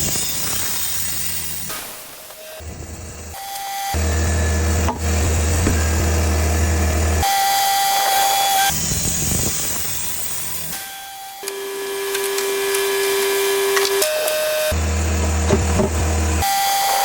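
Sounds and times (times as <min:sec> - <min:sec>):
sawmill machine hum: 0:02.6 - 0:07.4, 0:14.6 - 0:16.6.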